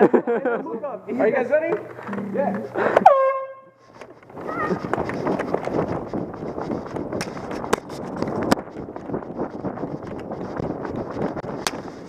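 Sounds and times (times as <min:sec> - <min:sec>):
quick footsteps: 0:03.8 - 0:12.0.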